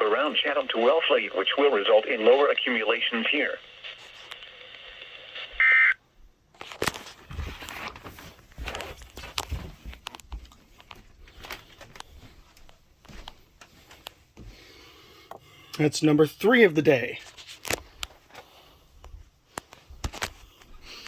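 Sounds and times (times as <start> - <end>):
radio hissing faintly: 0.0 - 6.0
handling clicks and rustling: 6.6 - 14.2.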